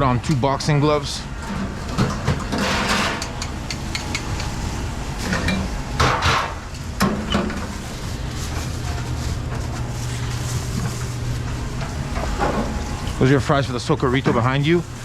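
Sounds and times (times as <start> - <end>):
steady low hum: 0.0 - 15.0
utensils and containers clattering: 1.4 - 4.6, 5.2 - 13.3.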